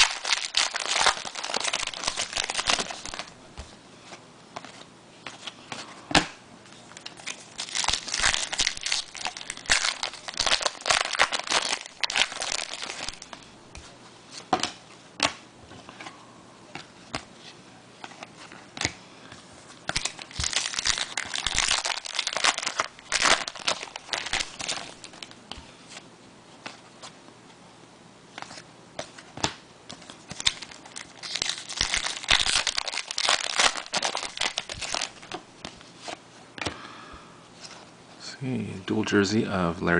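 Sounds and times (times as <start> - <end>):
wrappers tearing and crinkling: 0.0 - 3.3, 7.2 - 13.4, 19.9 - 25.3, 30.3 - 35.4.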